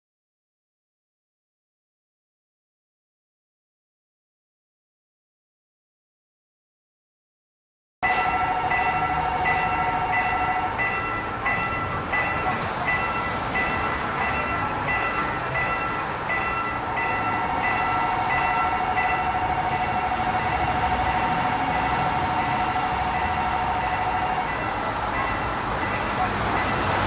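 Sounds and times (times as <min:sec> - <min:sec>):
level crossing warning bell: 0:08.0 - 0:27.0.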